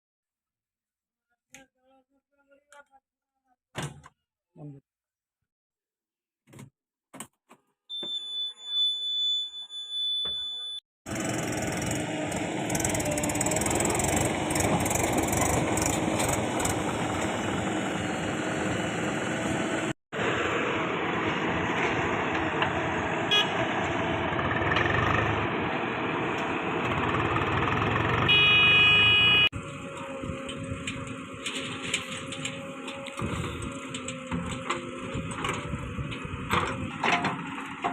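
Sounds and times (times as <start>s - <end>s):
diesel engines running: 11.1s - 37.9s
vehicle horn: 23.3s - 23.7s, 28.2s - 29.5s.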